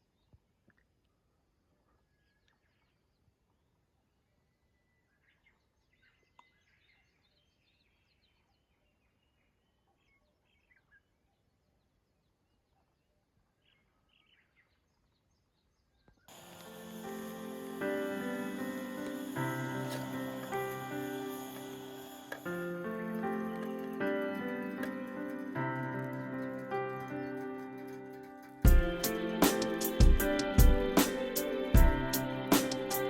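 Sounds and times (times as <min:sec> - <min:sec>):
music: 0:16.3 - 0:33.0.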